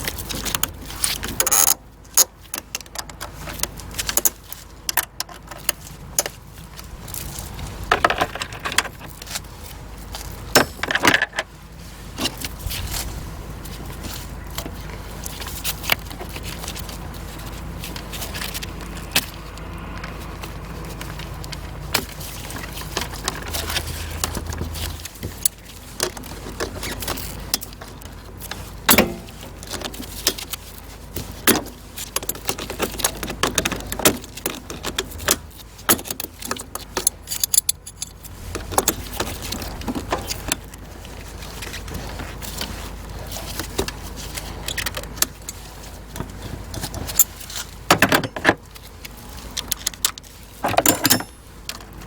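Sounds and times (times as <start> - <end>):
metal tools clinking: 10.5 - 11.5, 35.9 - 39.1, 50.6 - 52.0.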